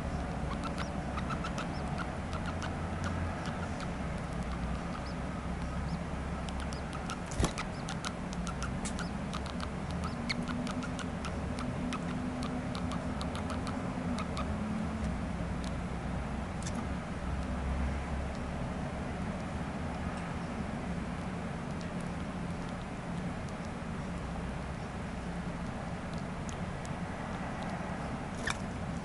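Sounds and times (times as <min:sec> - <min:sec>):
baby birds chirping: 0:00.0 - 0:14.6
steady low hum: 0:00.0 - 0:29.0
sharp click: 0:07.3 - 0:07.7.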